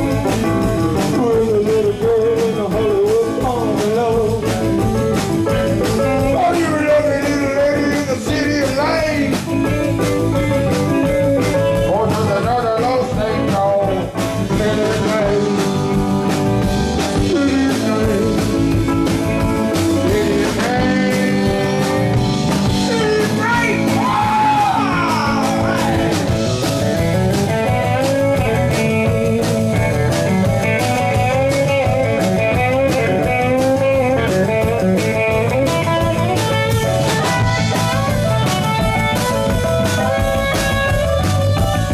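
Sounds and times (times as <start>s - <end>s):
person singing: 0.0s - 4.8s, 5.6s - 9.7s, 11.6s - 16.3s, 16.9s - 26.4s
rock band playing blues-rock: 0.0s - 41.9s.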